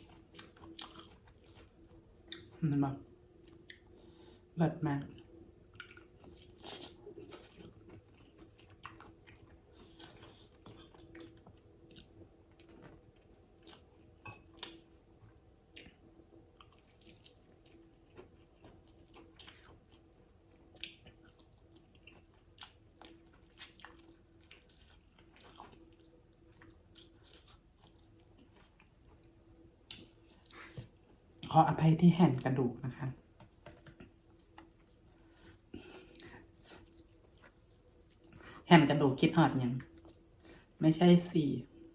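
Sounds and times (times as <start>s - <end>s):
faint steady hum: 0.0s - 41.9s
person chewing with wet mouth clicks: 0.3s - 2.6s, 3.5s - 3.9s, 5.7s - 13.0s, 13.6s - 14.8s, 20.6s - 28.8s.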